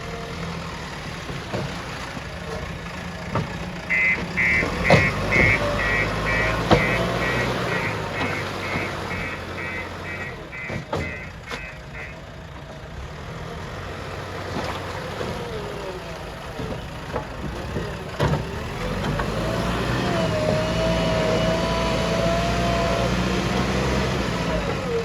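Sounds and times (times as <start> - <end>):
diesel engine running: 0.0 - 25.0
sharp metal knocks: 3.4 - 11.8.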